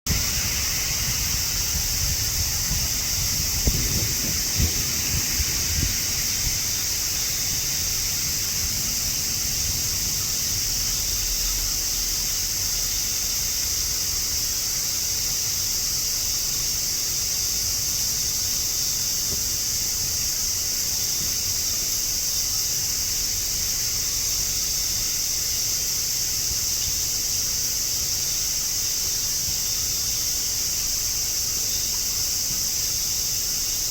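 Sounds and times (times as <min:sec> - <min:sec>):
wind buffeting microphone: 0:00.1 - 0:11.6
cicadas buzzing: 0:00.1 - 0:33.9.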